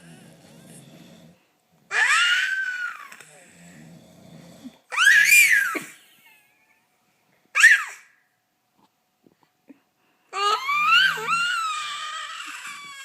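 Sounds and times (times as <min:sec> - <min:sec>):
man snoring: 0:00.0 - 0:01.5, 0:03.2 - 0:04.9
baby squealing: 0:01.9 - 0:03.1, 0:04.9 - 0:05.9, 0:07.6 - 0:08.1, 0:10.4 - 0:13.0.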